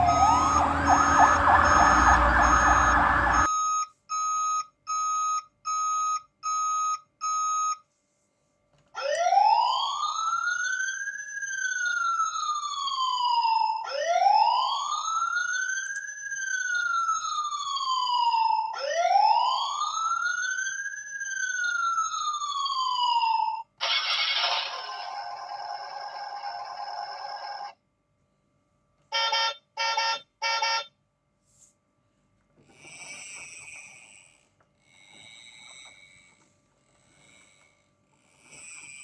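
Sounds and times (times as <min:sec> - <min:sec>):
buzzing tone: 0:00.0 - 0:03.5
toy fire truck siren: 0:00.0 - 0:03.5, 0:09.0 - 0:27.8, 0:29.1 - 0:30.9.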